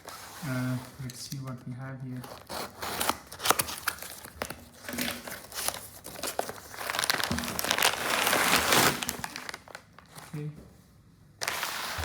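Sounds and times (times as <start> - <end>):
packaging crinkling: 2.3 - 10.4.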